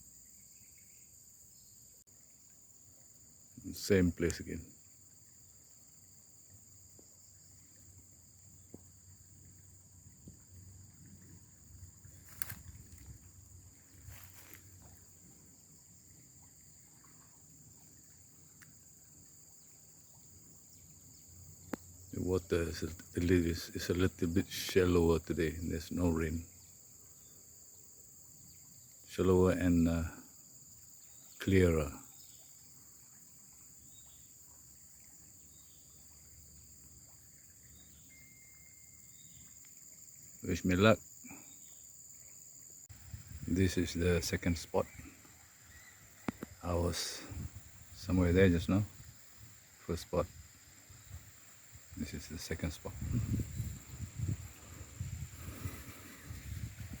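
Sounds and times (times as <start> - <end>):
crickets chirping: 0.0 - 57.0.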